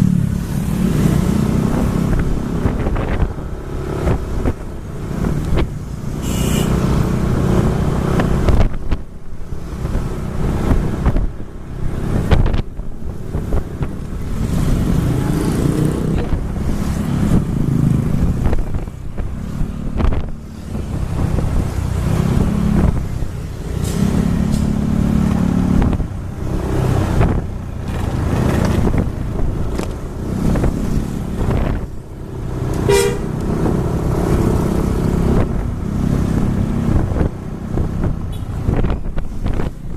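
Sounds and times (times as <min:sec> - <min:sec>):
vehicle engine and traffic: 0:00.0 - 0:39.9
short horn toot: 0:06.2 - 0:06.8, 0:32.8 - 0:33.3.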